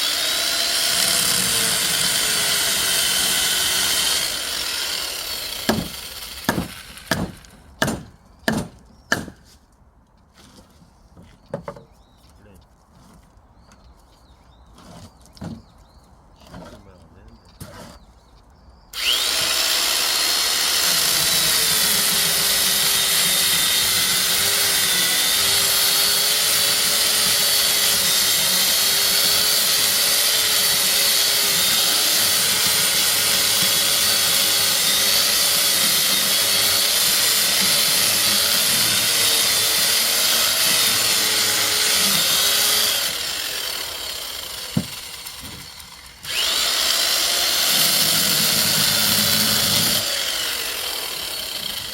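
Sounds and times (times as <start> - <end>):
power tool motor running: 0.0 - 7.5, 19.0 - 51.9.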